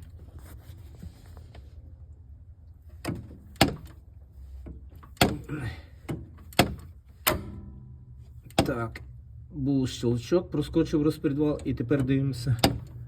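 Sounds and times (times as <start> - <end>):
low steady hum: 0.0 - 13.0.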